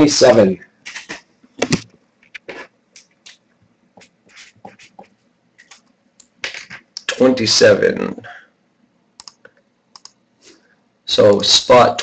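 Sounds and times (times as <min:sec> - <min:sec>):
hands clicking and rustling at desk: 0:00.8 - 0:07.0.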